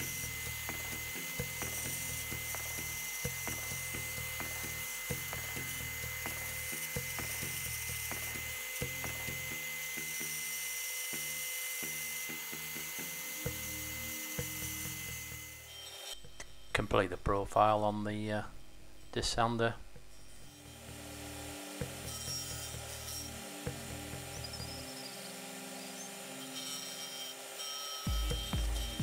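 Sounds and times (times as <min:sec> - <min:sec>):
background music with a beat: 0:00.0 - 0:10.2, 0:28.1 - 0:29.0
power tool whining: 0:00.0 - 0:16.9, 0:20.0 - 0:29.0.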